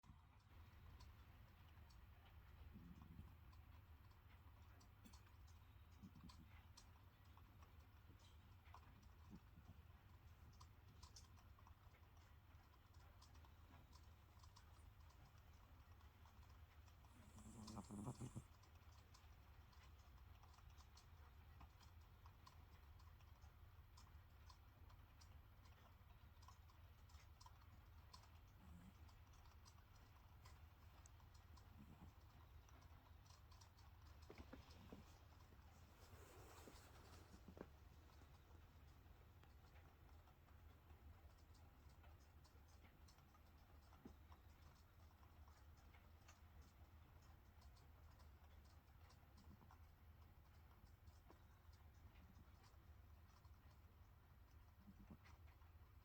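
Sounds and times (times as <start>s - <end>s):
faint clicks: 0.0s - 56.0s
faint small ticks: 0.0s - 56.0s.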